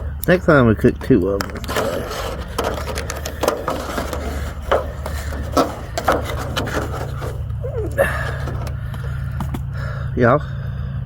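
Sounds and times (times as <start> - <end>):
low hum: 0.0 - 11.0
utensil scraping in pan: 1.6 - 7.5.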